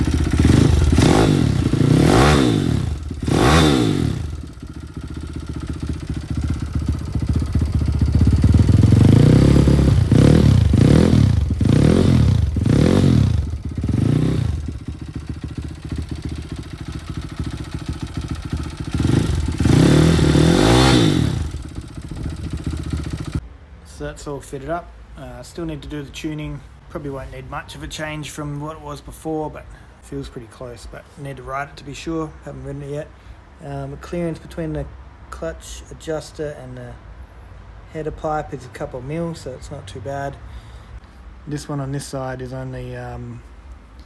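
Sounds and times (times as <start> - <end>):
motorbike engine idling and revving: 0.0 - 23.5.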